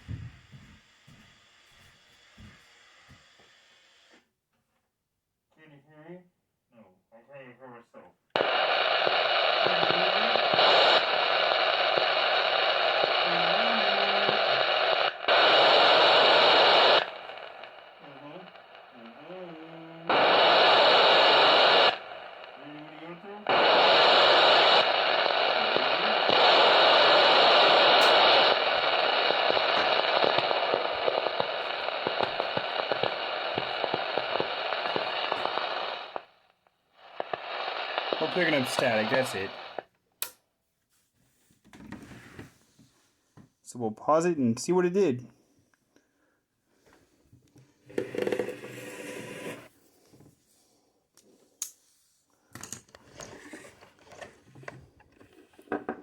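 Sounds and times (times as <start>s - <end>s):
radio speaker static hiss: 0.0s - 4.3s, 7.2s - 39.9s, 47.9s - 49.7s, 53.1s - 56.0s.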